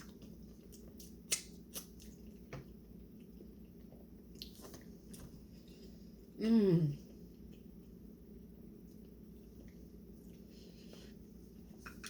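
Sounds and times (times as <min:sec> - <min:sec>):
wet eating sounds: 0:00.0 - 0:06.1.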